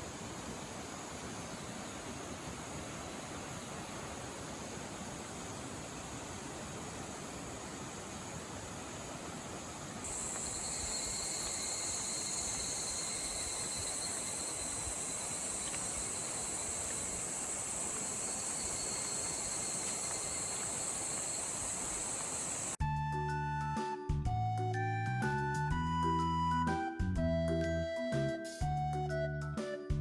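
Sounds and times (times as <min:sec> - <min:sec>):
insects buzzing: 0:00.0 - 0:22.8
stream rushing: 0:00.0 - 0:22.8.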